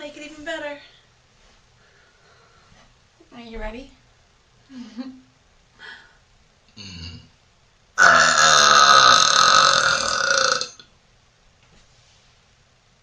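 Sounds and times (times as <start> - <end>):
woman burping loudly: 6.8 - 7.4, 8.0 - 10.8.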